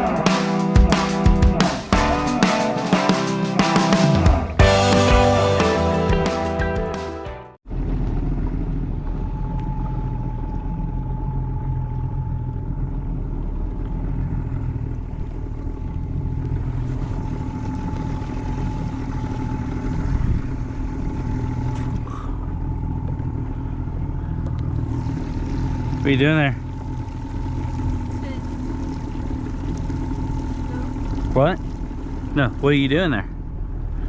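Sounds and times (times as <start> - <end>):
outboard motor running: 13.2 - 32.4.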